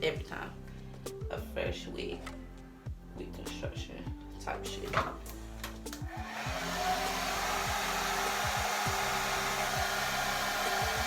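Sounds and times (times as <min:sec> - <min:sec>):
hair dryer blowing: 0:06.0 - 0:11.0.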